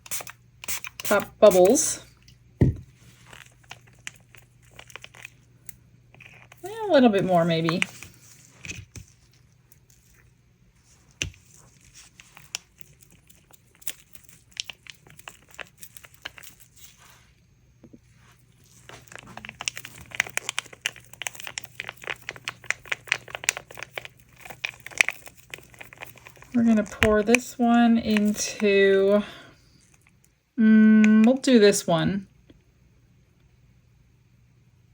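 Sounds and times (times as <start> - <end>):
plastic crinkling: 2.9 - 17.4, 18.0 - 30.2.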